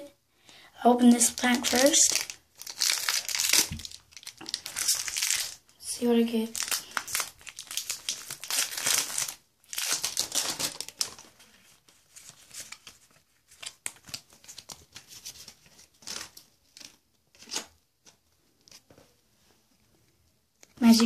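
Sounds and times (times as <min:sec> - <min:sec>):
foil wrapper tearing and crinkling: 0:01.2 - 0:05.6, 0:06.5 - 0:11.3.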